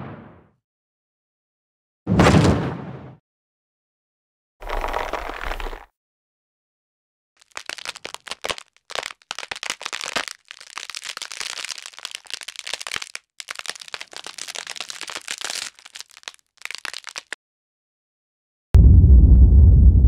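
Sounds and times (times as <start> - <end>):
bones cracking and crunching: 4.6 - 5.9, 7.4 - 17.4.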